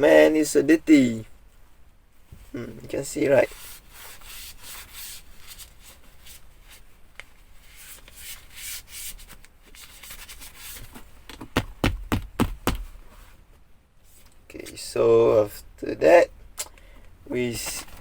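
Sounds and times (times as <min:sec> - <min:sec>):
sharp knocks: 0:11.4 - 0:13.0.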